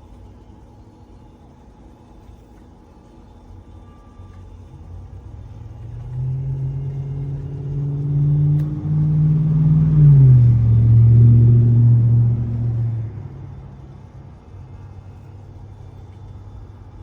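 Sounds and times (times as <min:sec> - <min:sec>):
pool vacuum motor humming: 0:03.9 - 0:17.0.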